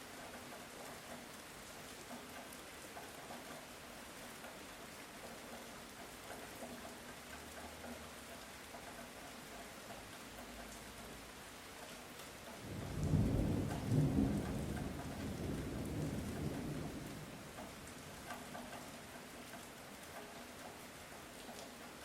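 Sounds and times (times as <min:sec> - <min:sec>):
raindrops pattering on surfaces: 0:00.0 - 0:22.0
light rain hissing: 0:10.0 - 0:21.9.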